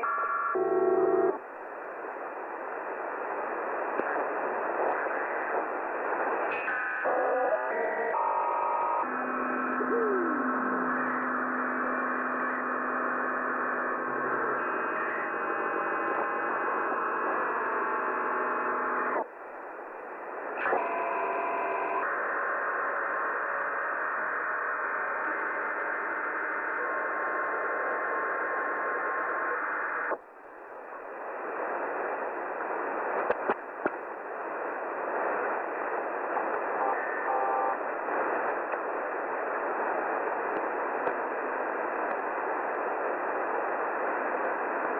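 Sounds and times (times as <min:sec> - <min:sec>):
radio hiss: 0:00.0 - 0:44.9
click: 0:40.5 - 0:41.2, 0:42.0 - 0:42.2.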